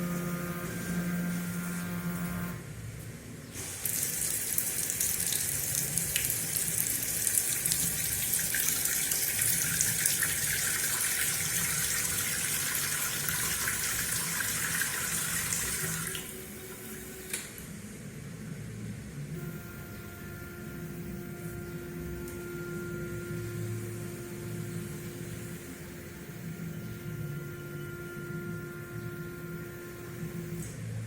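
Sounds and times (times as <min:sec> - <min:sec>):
water pouring and splashing: 0:03.6 - 0:16.3.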